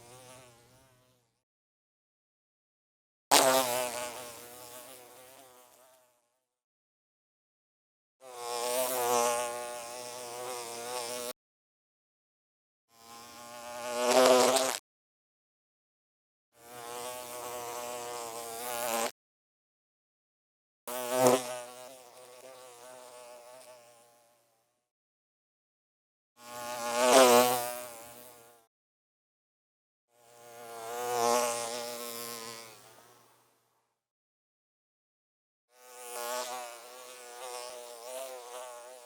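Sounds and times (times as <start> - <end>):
bee buzzing in flight: 0.0 - 1.2, 3.4 - 6.2, 8.2 - 11.4, 13.0 - 14.8, 16.6 - 19.2, 20.9 - 24.4, 26.4 - 28.7, 30.4 - 33.5, 35.8 - 39.0.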